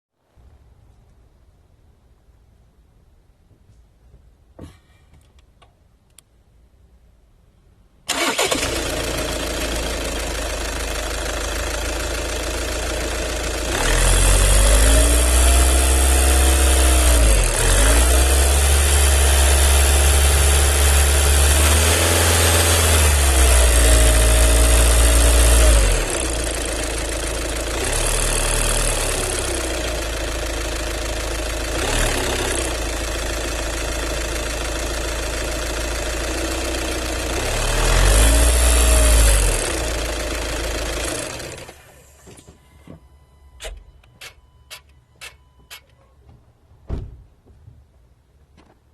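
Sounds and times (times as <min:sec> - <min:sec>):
diesel engine idling and revving: 0:08.1 - 0:42.3.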